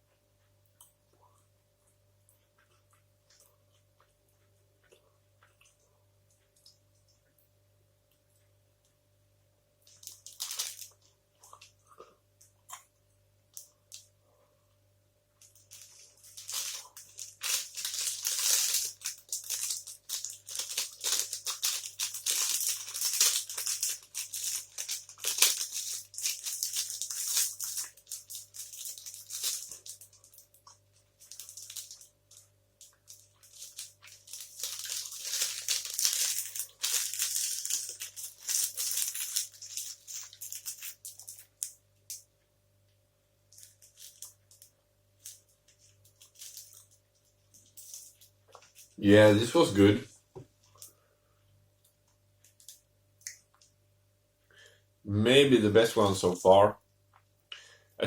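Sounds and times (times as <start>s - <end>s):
plastic wrapper crinkling: 9.8s - 11.7s, 15.4s - 42.3s, 43.5s - 49.8s, 52.4s - 53.6s.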